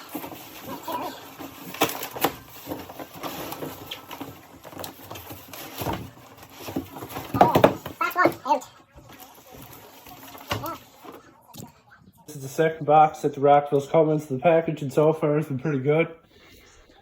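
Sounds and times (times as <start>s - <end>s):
cardboard box rustling: 0.0s - 8.4s.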